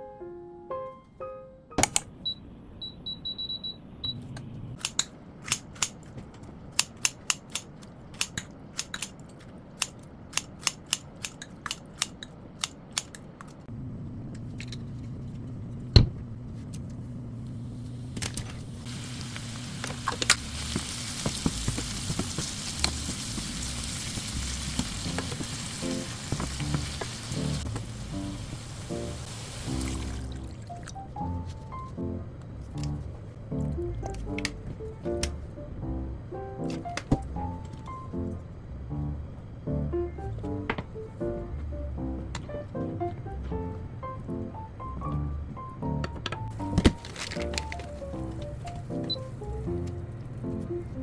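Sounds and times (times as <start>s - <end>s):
steady low hum: 13.7s - 47.1s
food sizzling in a pan: 18.7s - 30.5s.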